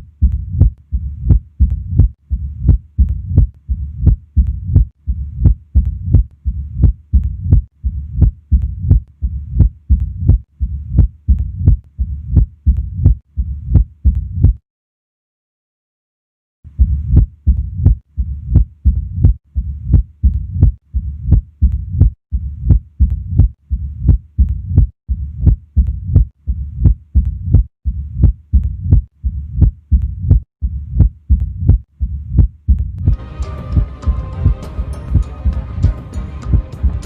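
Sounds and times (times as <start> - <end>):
low rumbling heart murmur: 0.0 - 14.6, 16.8 - 33.2
sharp heart sounds: 0.0 - 14.6, 16.7 - 37.0.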